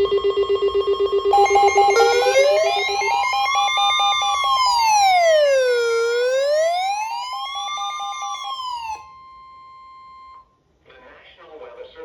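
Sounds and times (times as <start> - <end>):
rapid beeping: 1.2 - 9.0
electronic siren wailing: 1.3 - 10.4
steady high tone: 1.3 - 10.4.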